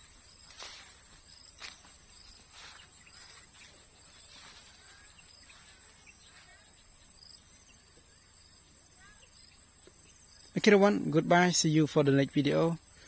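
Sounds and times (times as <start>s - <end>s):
soft rustles: 0.0s - 6.5s
bird chirps: 0.0s - 13.0s
high insect drone: 0.0s - 13.0s.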